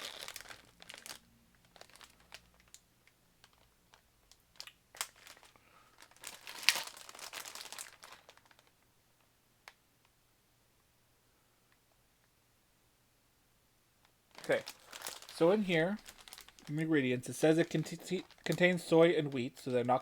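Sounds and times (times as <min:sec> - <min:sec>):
cookie package crinkling: 0:00.0 - 0:08.8, 0:14.3 - 0:20.0.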